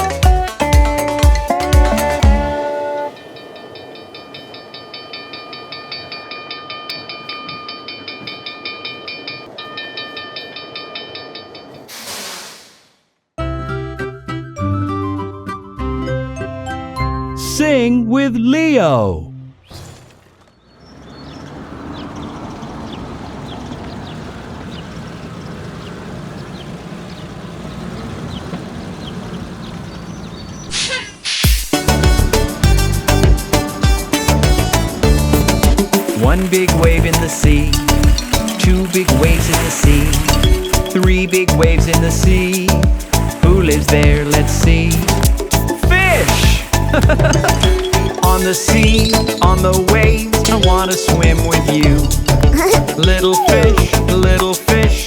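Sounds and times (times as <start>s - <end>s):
upbeat music: 0.0s - 3.1s, 13.4s - 19.5s, 31.5s - 55.0s
high falling bird chirps: 19.6s - 31.5s, 47.5s - 51.0s
train wheels clacking on rails: 32.0s - 45.6s, 46.4s - 53.2s
children's song: 33.9s - 55.0s.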